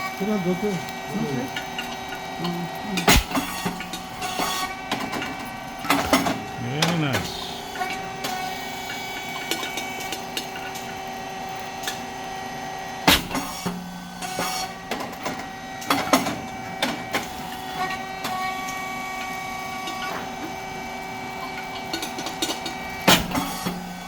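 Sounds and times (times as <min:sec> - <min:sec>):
sharp pop of rice cake: 0:03.1 - 0:03.4.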